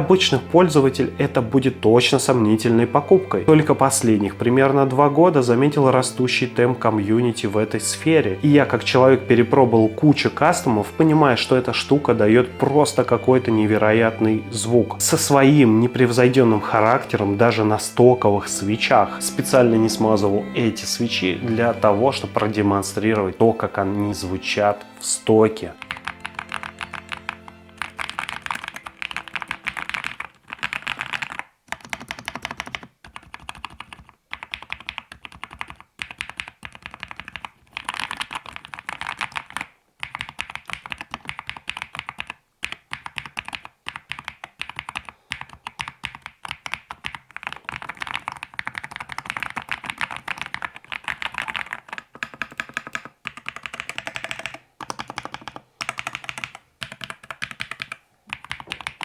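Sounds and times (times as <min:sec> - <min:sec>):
mechanical keyboard clacking: 0:25.8 - 0:59.0.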